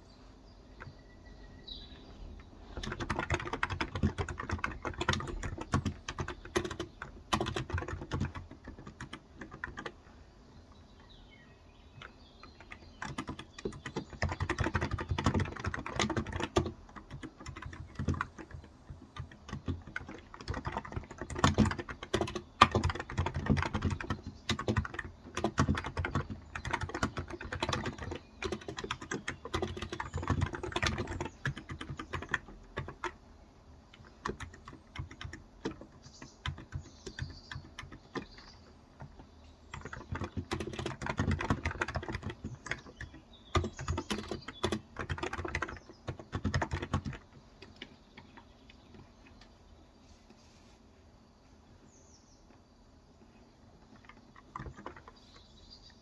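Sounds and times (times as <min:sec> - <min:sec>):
soft keyboard typing: 0:00.7 - 0:11.2, 0:11.8 - 0:49.7, 0:53.6 - 0:56.0.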